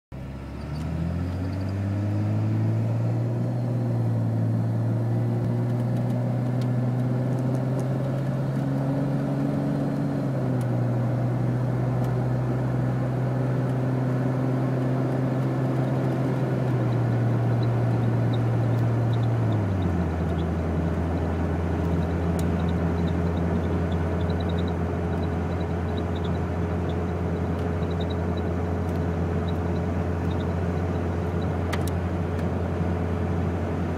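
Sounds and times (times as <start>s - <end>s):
car low droning hum: 0.1s - 33.9s.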